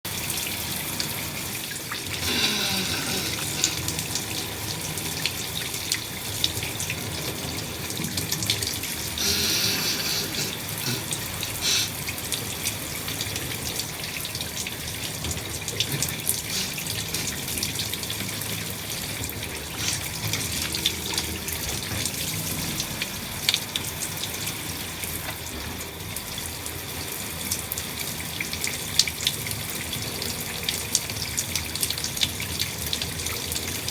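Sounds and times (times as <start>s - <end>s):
shower water spraying: 1.9s - 14.1s, 14.7s - 23.6s.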